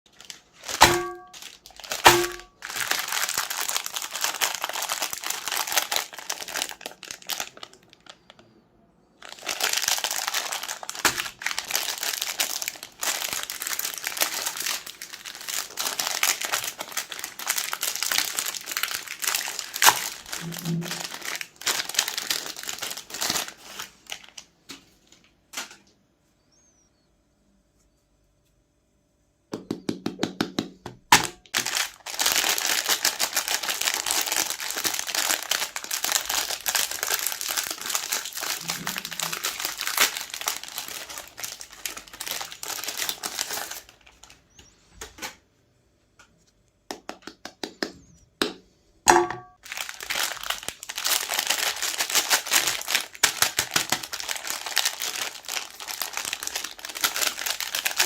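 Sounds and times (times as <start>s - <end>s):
sharp cracks: 0.6s - 2.9s
grinder crunching ice cream: 31.3s - 44.0s, 49.8s - 58.0s.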